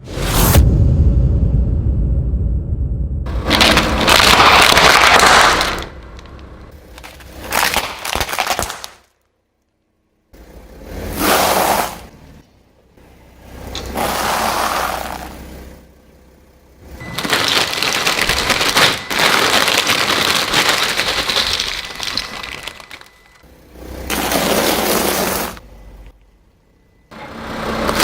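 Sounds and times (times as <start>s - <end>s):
car tyre crushing objects: 3.3s - 10.0s, 11.0s - 12.1s, 13.6s - 15.4s, 16.9s - 26.2s, 27.8s - 28.0s.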